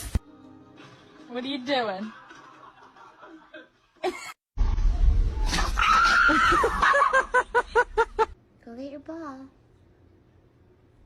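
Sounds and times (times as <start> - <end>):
high-pitched scream: 5.3 - 6.8
bursts of laughter: 5.9 - 8.4.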